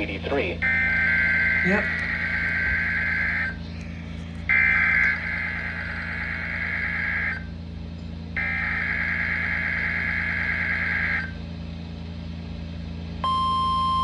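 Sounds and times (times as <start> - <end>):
steady low hum: 0.0 - 14.0
electronic alarm buzzing tone: 0.6 - 3.6, 4.5 - 7.5, 8.4 - 11.4, 13.2 - 14.0.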